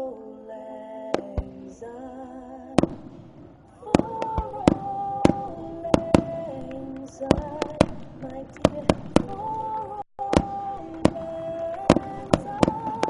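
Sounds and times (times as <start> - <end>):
fireworks bursting: 1.2 - 1.8, 2.8 - 13.0.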